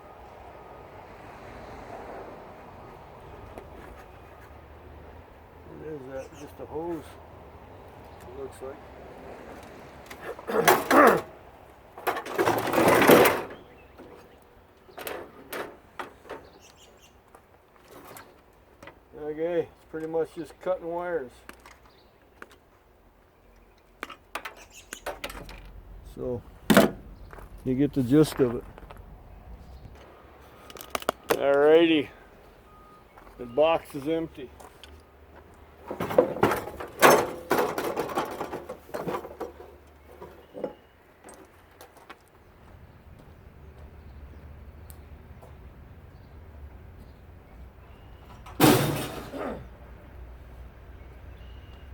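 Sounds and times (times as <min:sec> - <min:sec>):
metal parts knocking and rattling: 0:12.0 - 0:13.6, 0:35.9 - 0:39.7, 0:48.4 - 0:49.4
scraping rustle: 0:12.0 - 0:14.3, 0:17.8 - 0:18.5.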